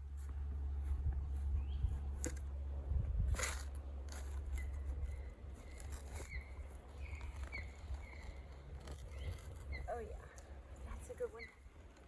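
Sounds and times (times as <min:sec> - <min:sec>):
bird chirping: 0:04.6 - 0:10.4.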